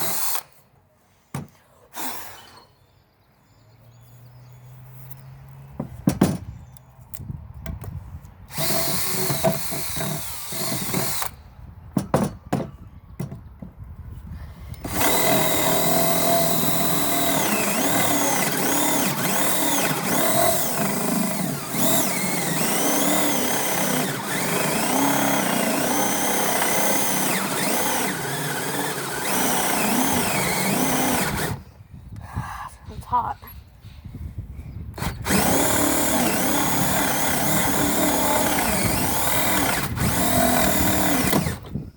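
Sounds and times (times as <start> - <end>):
cordless drill whining: 0.0 - 0.5, 2.0 - 2.8, 8.5 - 11.4, 14.7 - 31.7, 35.0 - 41.9
drill clicks: 0.0 - 0.5, 8.5 - 11.4, 14.7 - 31.6, 35.0 - 41.8.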